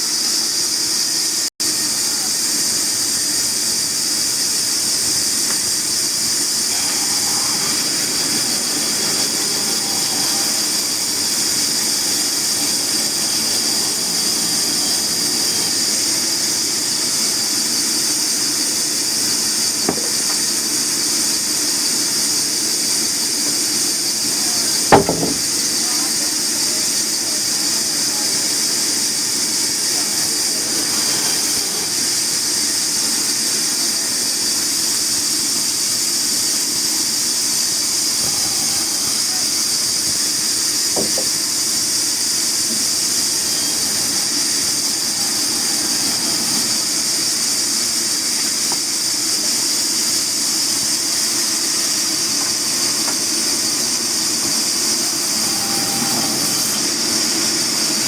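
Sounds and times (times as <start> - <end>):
saw cutting timber: 2.5 - 58.0
loud knock: 19.9 - 20.6, 24.9 - 25.7, 41.0 - 41.4.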